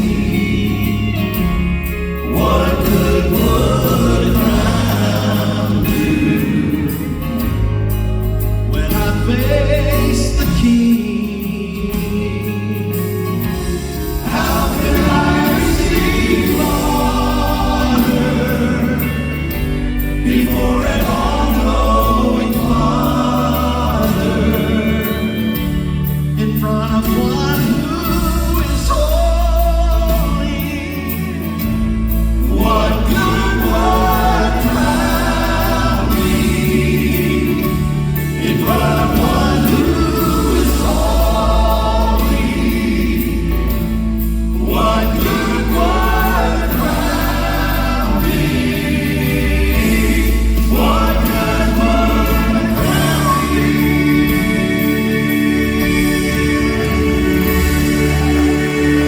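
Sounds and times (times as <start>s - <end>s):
gospel group singing in harmony: 0.0s - 59.0s
steady bass accompaniment: 0.0s - 59.0s.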